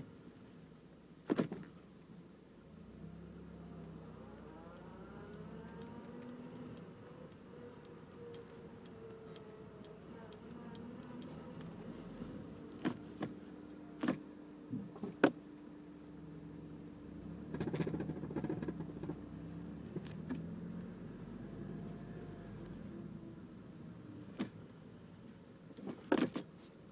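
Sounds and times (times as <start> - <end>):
car engine idling: 2.6 - 24.9
sharp clicks: 4.8 - 11.8.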